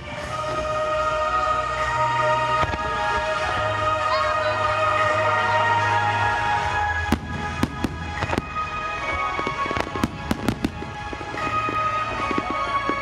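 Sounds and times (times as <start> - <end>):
steady music: 0.0 - 13.0
fireworks bangs and cracks: 6.5 - 13.0.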